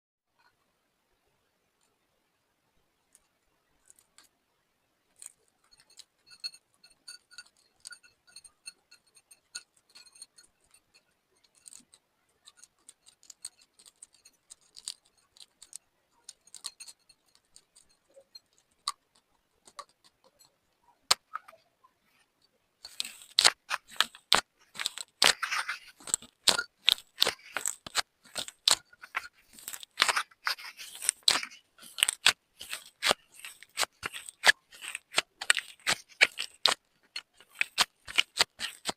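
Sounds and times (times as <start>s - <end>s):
slime crackling and popping: 22.9s - 38.9s.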